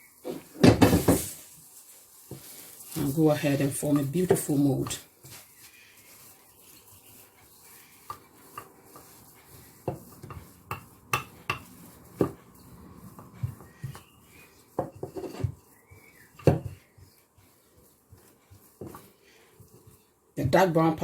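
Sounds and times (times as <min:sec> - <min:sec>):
utensils knocking on worktop: 0:09.9 - 0:12.4.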